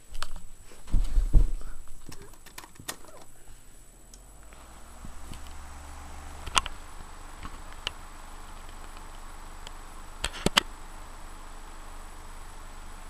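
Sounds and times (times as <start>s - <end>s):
fan motor hum: 0.9s - 13.0s
sharp clicks: 2.0s - 3.4s, 6.4s - 6.8s, 7.4s - 10.8s.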